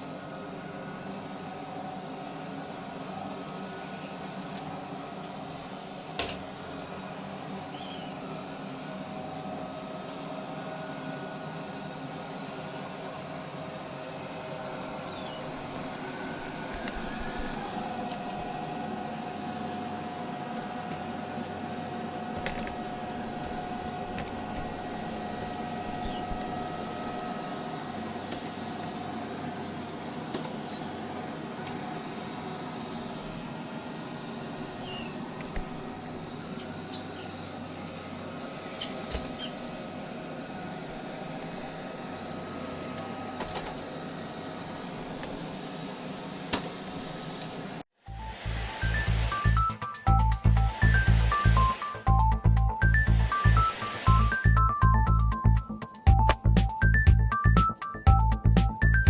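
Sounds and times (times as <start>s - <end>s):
robot vacuum motor humming: 14.2s - 55.3s.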